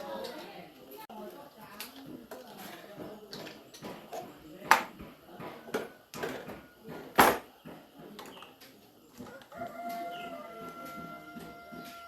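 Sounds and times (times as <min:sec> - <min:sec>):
hand tools knocking and clicking: 0:02.0 - 0:10.0, 0:10.6 - 0:12.0
rooster crowing: 0:09.2 - 0:12.0.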